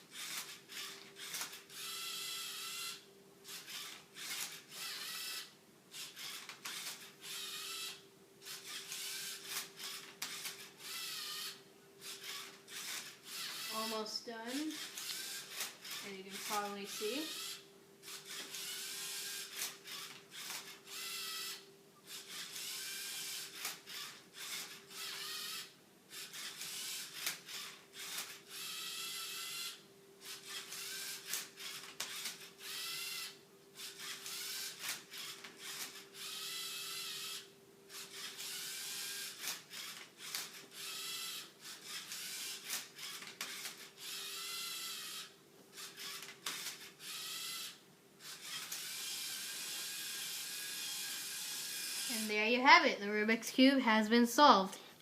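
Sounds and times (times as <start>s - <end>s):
faint steady hum: 0.0s - 43.0s
servo motors whirring: 0.1s - 14.0s, 14.6s - 52.4s.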